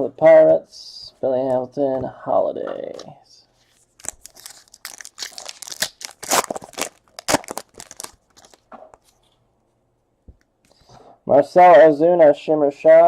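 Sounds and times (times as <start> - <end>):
cards being handled: 2.9 - 9.4
wrapper tearing and crinkling: 3.9 - 9.0.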